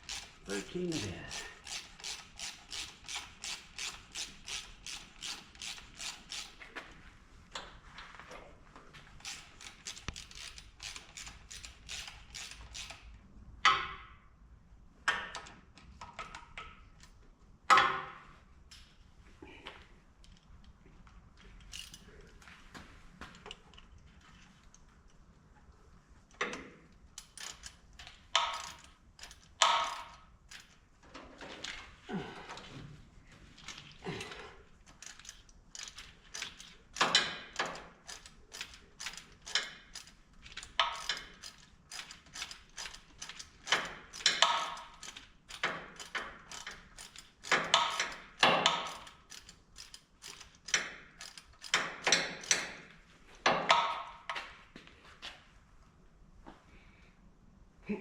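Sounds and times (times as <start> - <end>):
ratchet wrench clicking: 0.0 - 6.6, 9.2 - 13.1, 21.7 - 22.0, 27.2 - 30.8, 34.9 - 52.8.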